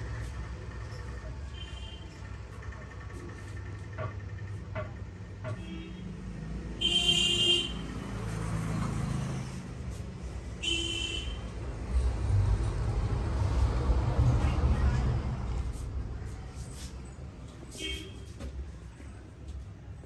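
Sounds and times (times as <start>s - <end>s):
road traffic rumbling: 0.0s - 20.0s
vehicle horn honks: 6.8s - 7.8s, 10.6s - 11.4s, 17.7s - 18.3s.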